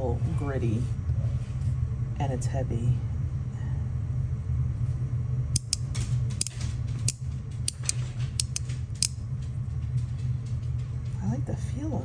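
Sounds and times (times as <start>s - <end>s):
magnets snapping with sharp clicks: 5.6s - 9.2s.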